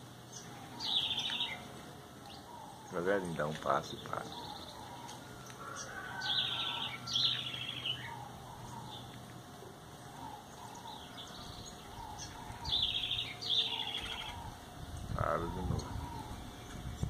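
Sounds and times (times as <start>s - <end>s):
bird descending trills: 10.1s - 16.8s.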